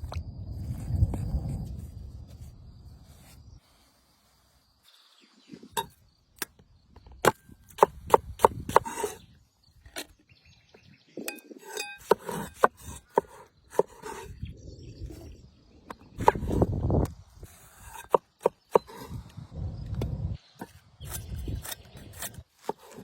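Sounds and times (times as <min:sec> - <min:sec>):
knife chopping on wood: 0:07.2 - 0:09.2, 0:11.6 - 0:14.2.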